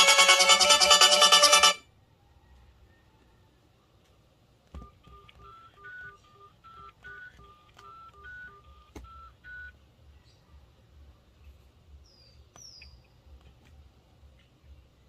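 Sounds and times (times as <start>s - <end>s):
electronic phone beeps: 0.0s - 1.8s, 5.1s - 9.7s.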